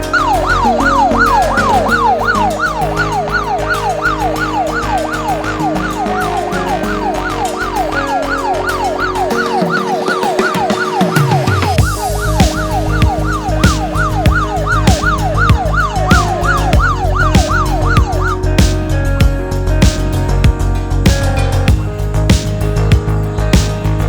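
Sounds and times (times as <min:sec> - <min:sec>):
background music: 0:00.0 - 0:24.0
phone alarm siren whooping: 0:00.1 - 0:18.5.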